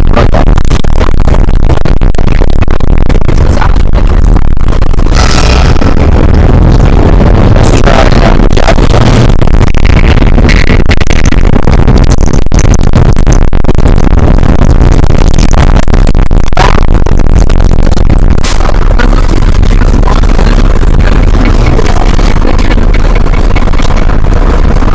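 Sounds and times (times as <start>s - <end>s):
dense crackling: 0.0s - 24.9s
heavily distorted noise music: 0.0s - 24.9s
low drone: 3.3s - 11.6s.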